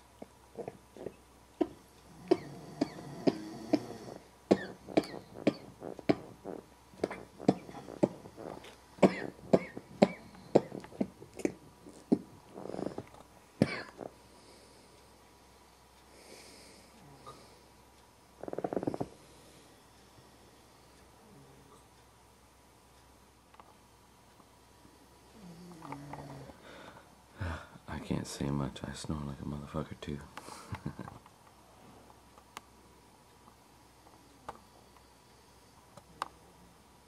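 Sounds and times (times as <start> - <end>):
stifled laughing snorts: 0.6 - 8.7.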